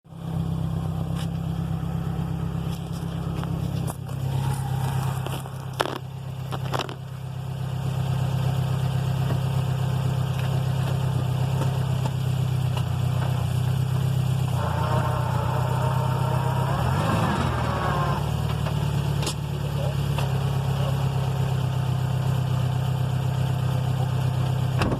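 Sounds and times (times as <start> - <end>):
car engine drone: 0.0 - 24.9
transmission grinding: 1.0 - 8.1, 10.4 - 21.1.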